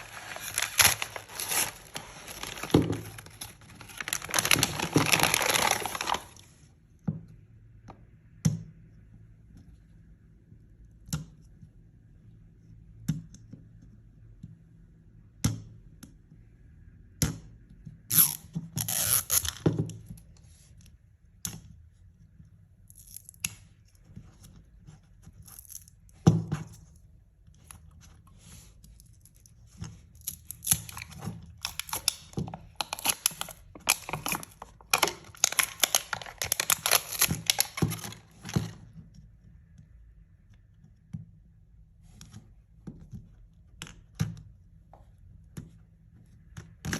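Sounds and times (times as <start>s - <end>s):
plastic wrapping tearing and crinkling: 0.0s - 6.5s, 18.1s - 19.6s, 30.2s - 38.7s.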